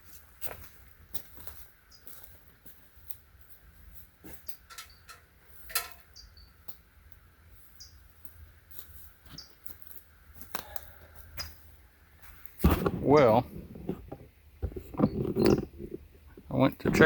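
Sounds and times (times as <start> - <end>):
small bird chirping: 1.9 - 2.2, 4.4 - 5.1, 6.0 - 6.8, 7.7 - 8.1, 9.3 - 9.7
handling clicks and knocks: 4.6 - 6.1, 12.6 - 17.0.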